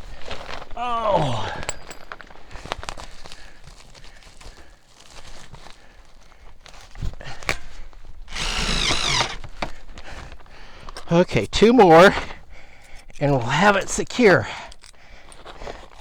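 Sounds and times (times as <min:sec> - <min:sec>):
handling clicks and rustling: 0:01.4 - 0:03.9, 0:08.3 - 0:16.0
power drill whining: 0:08.3 - 0:09.8.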